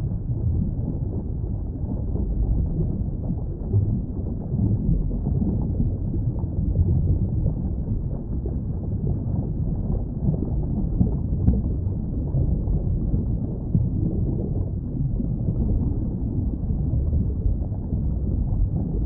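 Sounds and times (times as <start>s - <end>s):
muffled underwater rumble: 0.0s - 19.0s.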